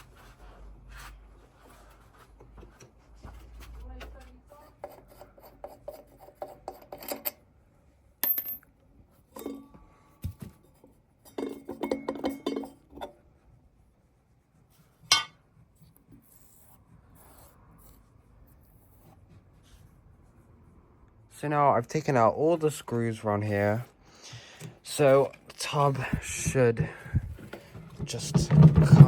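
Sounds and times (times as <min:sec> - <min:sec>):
tools and metal parts clicking: 0:06.6 - 0:07.4.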